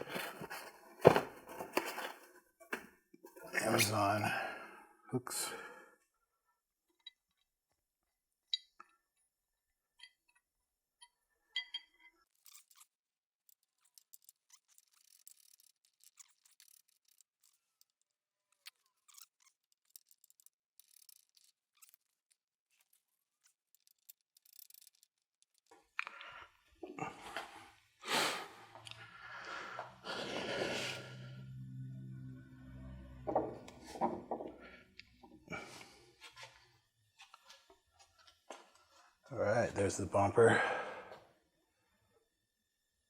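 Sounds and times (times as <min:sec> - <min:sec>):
metal shackles clicking and clinking: 0:11.5 - 0:26.2.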